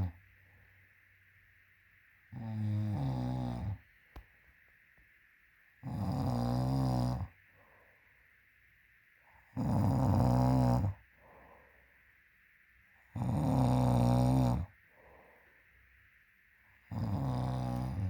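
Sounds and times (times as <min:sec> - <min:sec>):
woman snoring loudly: 0:02.3 - 0:03.8, 0:05.8 - 0:07.3, 0:09.6 - 0:11.0, 0:13.1 - 0:14.7, 0:16.9 - 0:18.0
faint breaths: 0:07.2 - 0:09.6, 0:10.9 - 0:12.6, 0:14.6 - 0:18.0.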